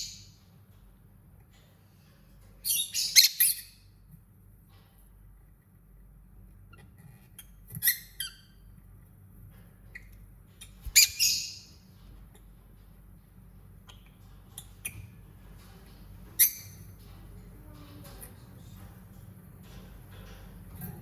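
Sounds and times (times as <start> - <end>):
bird squawking and chirping: 10.8 - 11.8.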